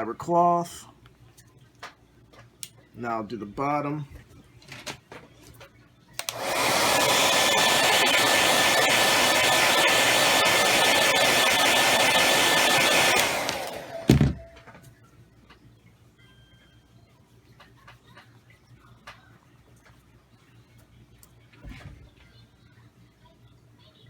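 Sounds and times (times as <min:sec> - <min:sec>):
hair dryer blowing: 0:06.2 - 0:14.6.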